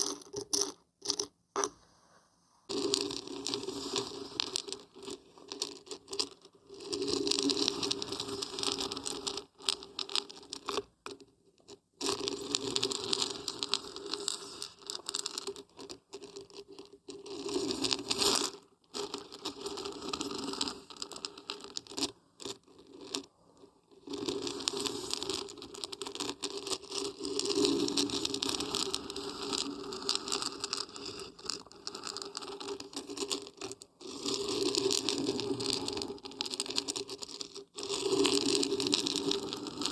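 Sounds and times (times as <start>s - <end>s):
dried beans rattling when shaken: 2.7s - 10.8s, 24.1s - 39.9s.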